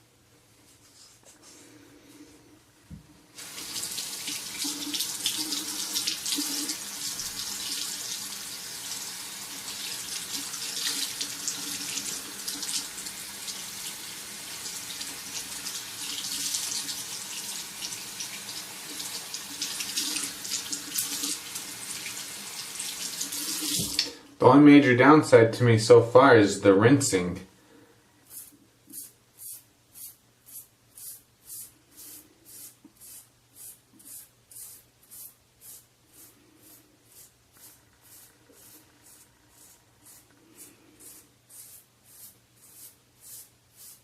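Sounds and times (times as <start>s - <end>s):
water running into sink: 3.4s - 24.1s.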